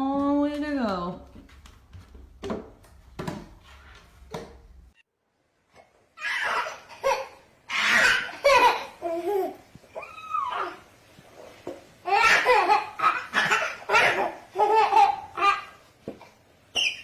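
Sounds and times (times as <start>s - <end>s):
baby laughing and squealing: 6.2s - 10.9s, 12.1s - 15.8s, 16.7s - 17.0s.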